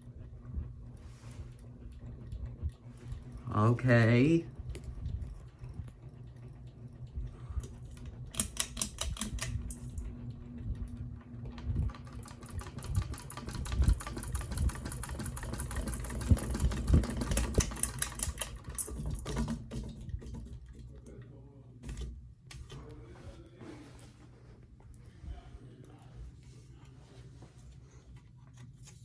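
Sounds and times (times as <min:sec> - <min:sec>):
ceiling fan rumble: 0:00.0 - 0:29.0
rapid clicking tick: 0:10.8 - 0:19.9.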